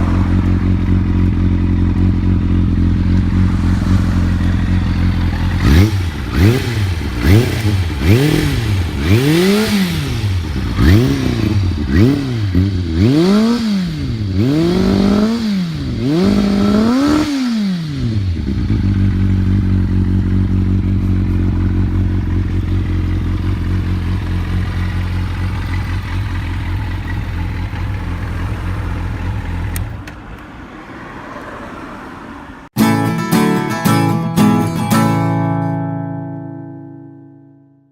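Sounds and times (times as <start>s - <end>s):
motorcycle engine revving and idling: 0.0s - 30.2s.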